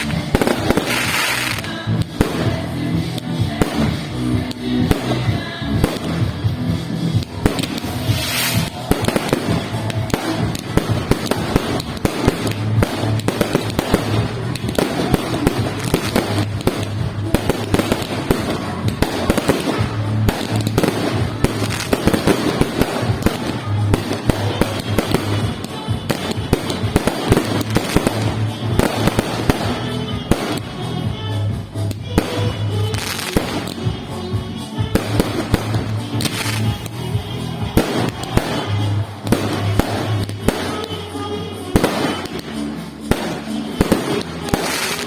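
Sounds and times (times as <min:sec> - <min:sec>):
fireworks crackling and banging: 0:00.0 - 0:45.0
music: 0:00.0 - 0:45.0.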